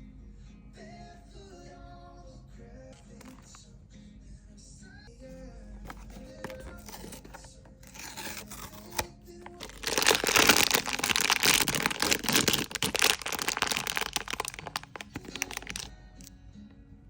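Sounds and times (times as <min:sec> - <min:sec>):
soft background music: 0:00.0 - 0:17.0
packaging cracking: 0:03.2 - 0:03.6, 0:05.8 - 0:15.9
plastic wrapper crinkling and tearing: 0:03.2 - 0:03.6, 0:05.8 - 0:15.9.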